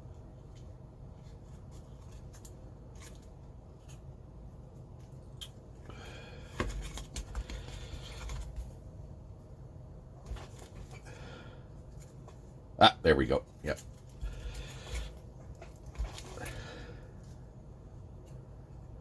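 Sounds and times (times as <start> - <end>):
light clicks and scratches: 0.0 - 5.7, 6.5 - 8.8.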